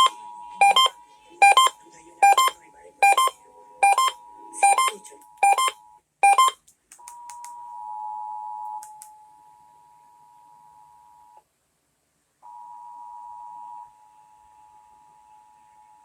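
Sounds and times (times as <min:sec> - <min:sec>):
two-tone alert signal: 0:00.0 - 0:06.6.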